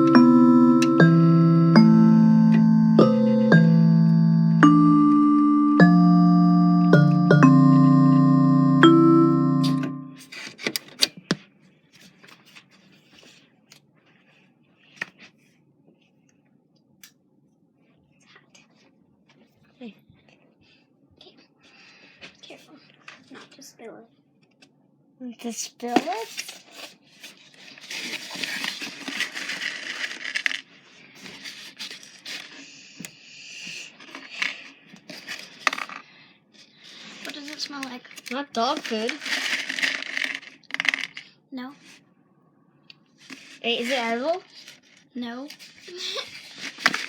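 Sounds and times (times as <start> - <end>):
piano note: 0.0 - 10.3
faint rustling and scraping: 11.4 - 16.5, 25.8 - 32.7, 43.2 - 47.0.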